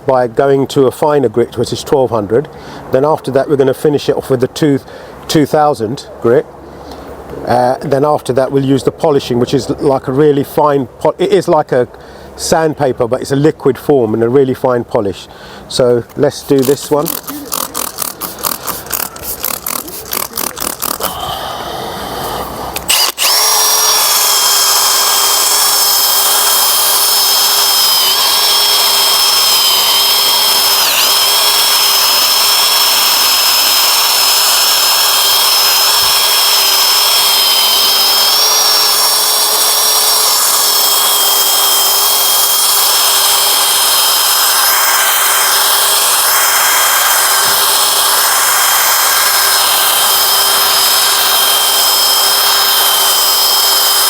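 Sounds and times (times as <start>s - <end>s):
power sander whining: 16.5s - 54.0s.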